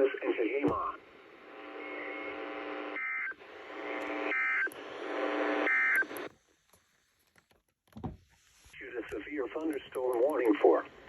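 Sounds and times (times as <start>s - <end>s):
radio buzzing hum: 0.0s - 6.3s, 8.7s - 11.0s.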